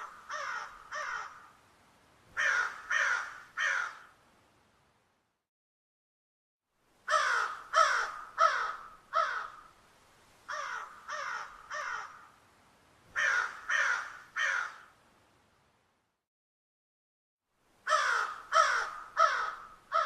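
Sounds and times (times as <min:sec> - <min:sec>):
crows cawing: 0:00.0 - 0:01.6, 0:02.4 - 0:04.2, 0:07.1 - 0:09.8, 0:10.5 - 0:12.4, 0:13.1 - 0:15.0, 0:17.8 - 0:20.0.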